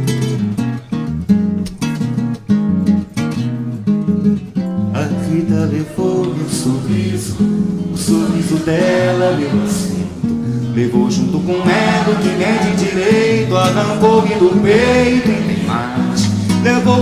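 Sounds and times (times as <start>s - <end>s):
acoustic guitar strumming and picking: 0.0s - 17.0s.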